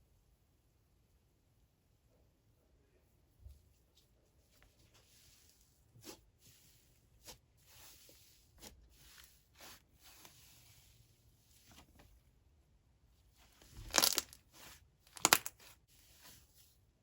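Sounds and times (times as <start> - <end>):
slime squishing and popping: 13.8 - 14.4, 15.1 - 15.7.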